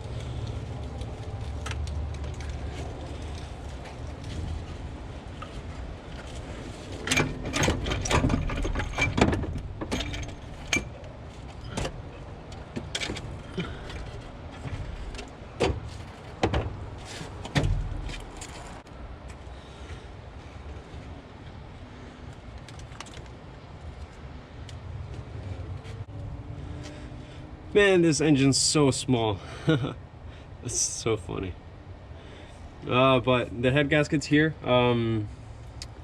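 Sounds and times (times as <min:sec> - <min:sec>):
metallic clinks and rattles: 0:07.0 - 0:11.8.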